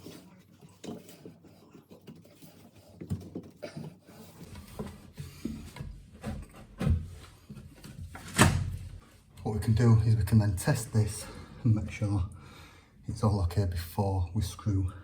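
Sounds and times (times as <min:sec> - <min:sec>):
soft handling knocks and rubbing: 0:00.0 - 0:09.4.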